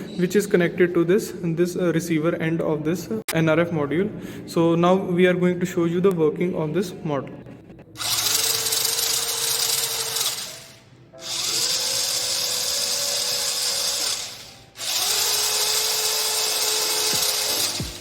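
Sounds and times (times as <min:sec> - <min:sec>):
small electric motors whining: 0:08.0 - 0:18.0.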